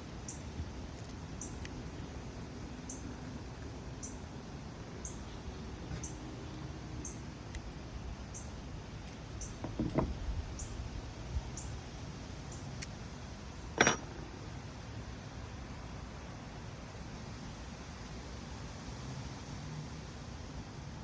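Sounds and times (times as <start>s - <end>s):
handling knocks: 13.8s - 14.2s
sharp ringing clink: 13.8s - 14.2s.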